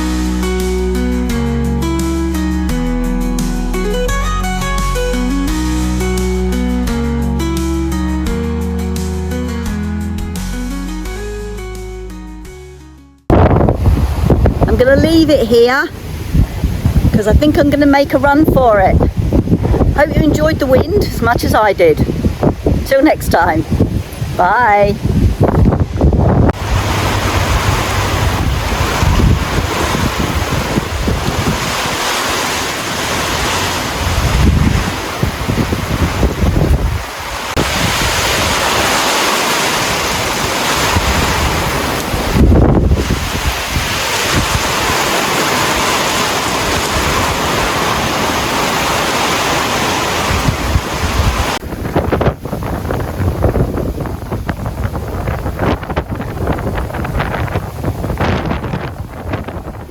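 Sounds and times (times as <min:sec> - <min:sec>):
wind buffeting a microphone: 0:13.3 - 0:59.9.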